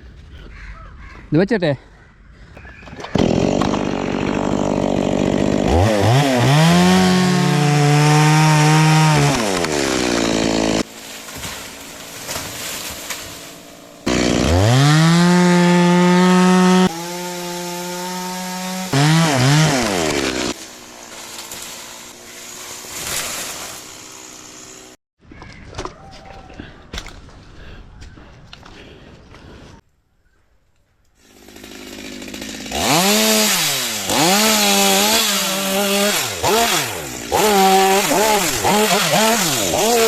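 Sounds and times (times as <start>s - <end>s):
chainsaw revving: 3.1s - 25.0s, 31.2s - 40.0s.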